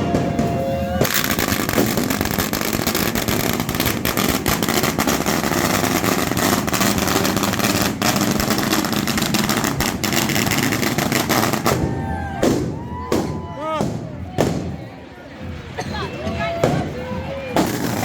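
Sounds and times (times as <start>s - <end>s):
fireworks crackling: 0.0s - 15.6s, 16.6s - 18.0s
fireworks roar: 0.0s - 18.0s
sharp firework cracks: 1.0s - 14.7s.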